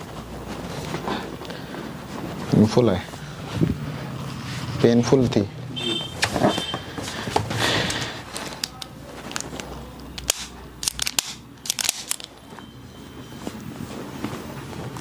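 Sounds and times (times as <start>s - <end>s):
sharp clicks and crackles: 7.8s - 12.4s.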